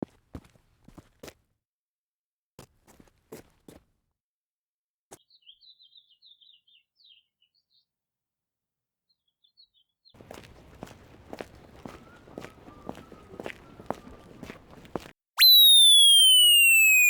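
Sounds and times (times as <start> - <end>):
footstep-like noise: 10.2 - 15.1
bird chirping: 10.5 - 14.8, 15.4 - 17.0.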